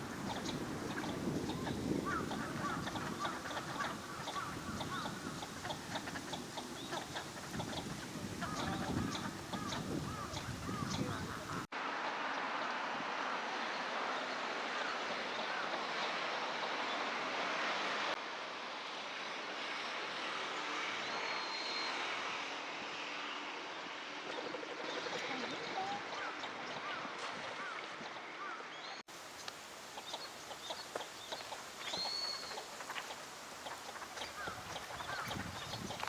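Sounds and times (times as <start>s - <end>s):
steady background hiss: 0.0s - 36.0s
ducks giving soft calls: 0.1s - 11.7s.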